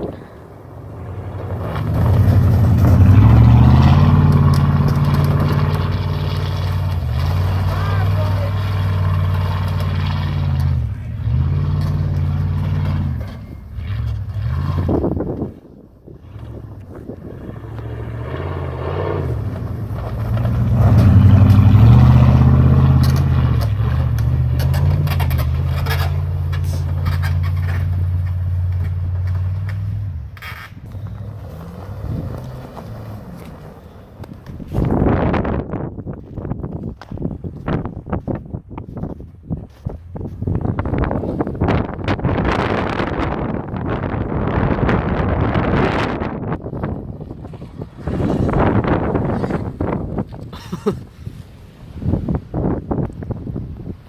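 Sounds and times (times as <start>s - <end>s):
vehicle engine pulling hard: 0.0s - 54.0s
scrapes and knocks: 23.0s - 33.6s.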